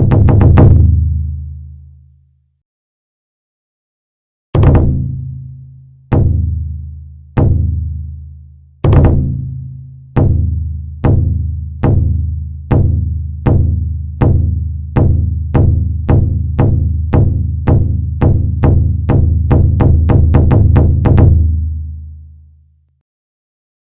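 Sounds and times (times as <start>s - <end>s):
deep drum beats: 0.0s - 1.2s, 4.6s - 5.2s, 6.1s - 8.1s, 8.8s - 9.6s, 10.2s - 21.8s.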